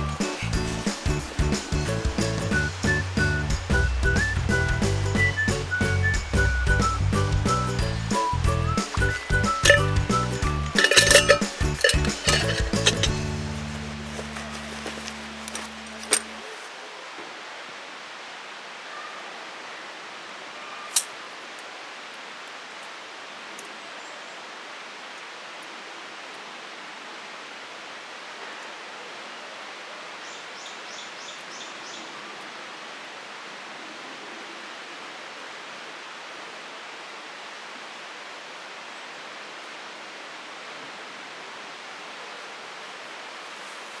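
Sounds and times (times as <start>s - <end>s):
steady rushing outdoor noise: 10.8s - 18.7s.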